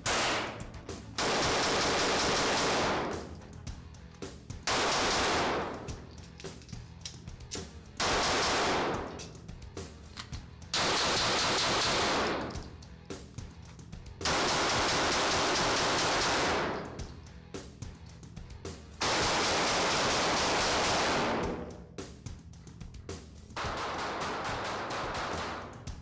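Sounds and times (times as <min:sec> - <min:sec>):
pistol shots: 0:00.0 - 0:03.4, 0:04.7 - 0:06.0, 0:08.0 - 0:09.3, 0:10.8 - 0:12.7, 0:14.3 - 0:17.1, 0:19.0 - 0:21.8, 0:23.6 - 0:25.9
background music: 0:00.0 - 0:26.0.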